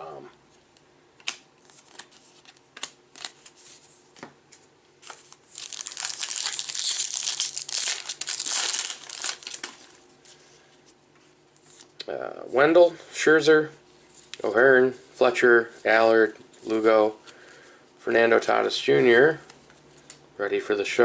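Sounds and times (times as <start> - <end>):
wrapper crinkling: 5.0 - 10.1.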